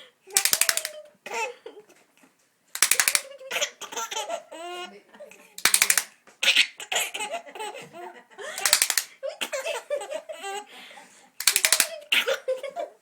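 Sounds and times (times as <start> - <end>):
baby laughing: 0.3 - 2.0, 2.8 - 4.9, 5.6 - 10.7, 11.4 - 13.0.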